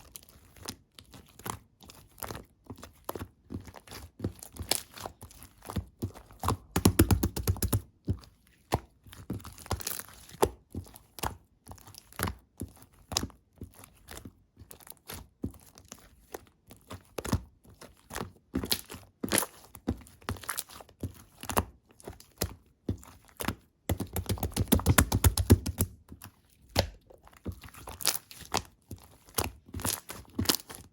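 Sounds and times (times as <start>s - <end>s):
slime squishing with sticky pops: 0.0s - 30.9s.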